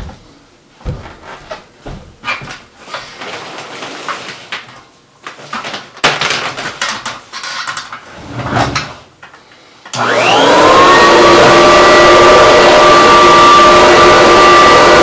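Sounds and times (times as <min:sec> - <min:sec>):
plastic parts clicking and clattering: 0:05.3 - 0:08.1.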